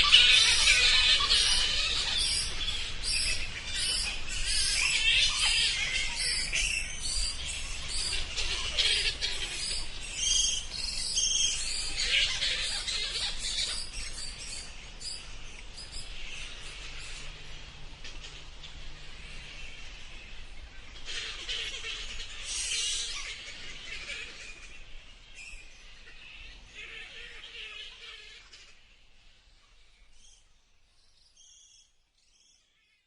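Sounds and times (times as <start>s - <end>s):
bats squeaking and chirping: 0.0s - 17.4s.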